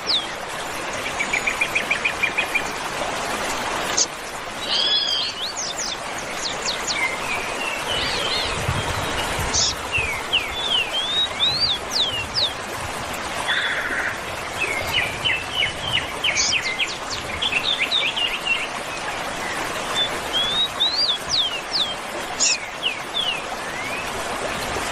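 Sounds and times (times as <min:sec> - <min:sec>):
birds chirping and whistling: 0:04.0 - 0:12.5, 0:13.5 - 0:18.7, 0:20.0 - 0:24.0.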